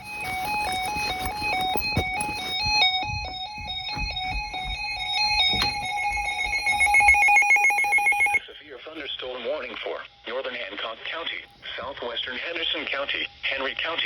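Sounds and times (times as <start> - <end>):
low thumps: 1.3 - 7.5
electronic alert beeps: 5.4 - 8.4.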